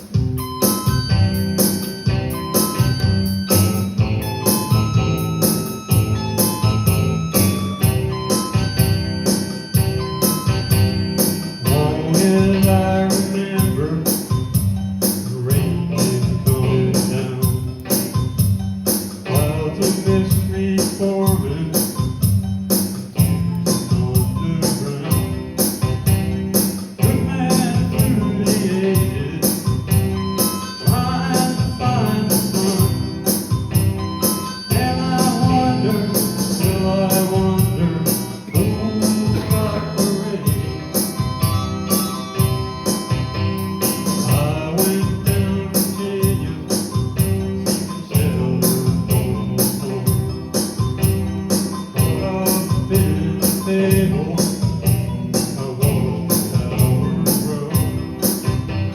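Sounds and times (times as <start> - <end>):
band playing a song: 0.0 - 58.9
person singing: 11.5 - 14.4, 15.2 - 17.9, 19.2 - 22.2, 23.2 - 25.6, 27.0 - 33.4, 34.5 - 41.4, 43.8 - 50.5, 51.9 - 58.6.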